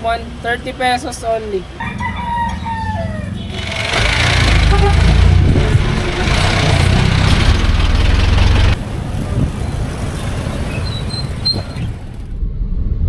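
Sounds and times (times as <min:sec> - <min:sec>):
street and traffic noise: 0:00.0 - 0:13.0
vehicle engine rumbling: 0:00.0 - 0:13.0.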